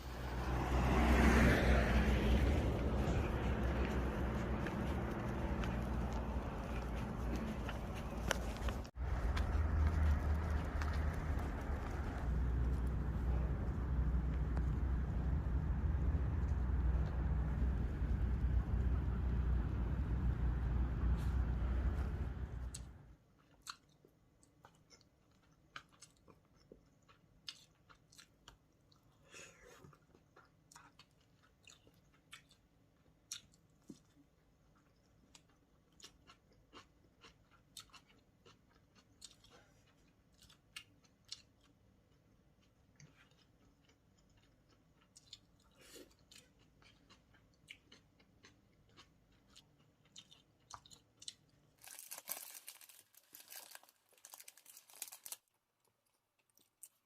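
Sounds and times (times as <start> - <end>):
person chewing: 1.8 - 17.8, 20.7 - 57.0.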